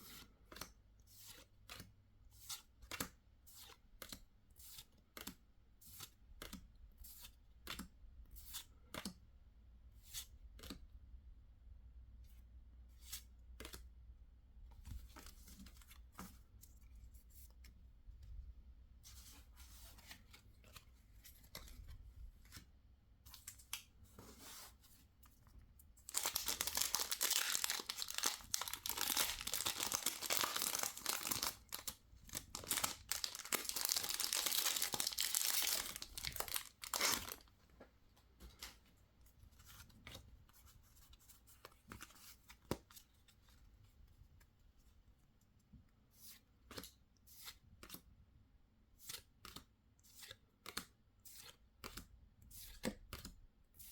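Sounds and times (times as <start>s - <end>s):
crinkly packaging tearing: 26.1s - 37.4s.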